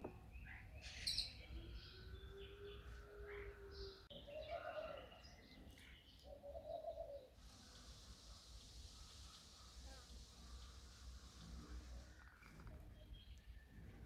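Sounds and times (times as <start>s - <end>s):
soft hiss: 7.4s - 12.7s.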